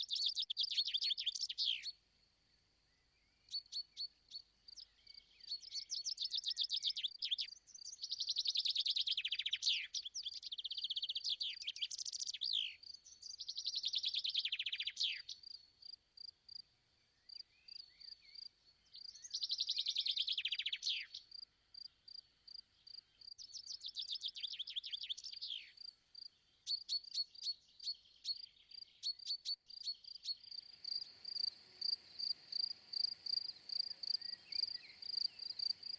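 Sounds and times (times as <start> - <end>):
birds singing trilled phrases: 0.0 - 2.0, 2.9 - 15.7, 17.1 - 21.4, 22.8 - 35.9
crickets chirping: 27.8 - 35.9
faint hiss: 30.4 - 35.9.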